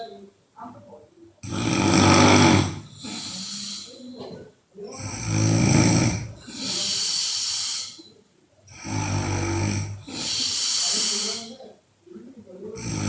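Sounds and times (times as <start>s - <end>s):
woman snoring: 1.4s - 4.1s, 4.9s - 8.1s, 8.7s - 11.6s, 12.8s - 13.0s
long airy breath: 1.8s - 4.2s, 6.1s - 8.1s, 8.7s - 11.6s.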